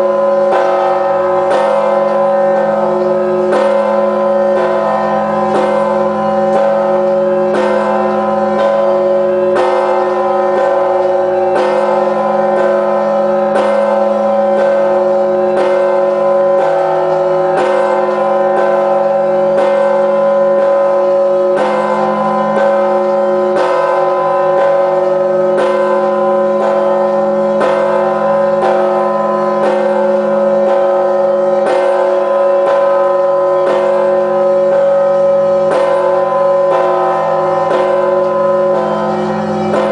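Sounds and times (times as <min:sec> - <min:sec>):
large church bell ringing: 0:00.0 - 0:39.9.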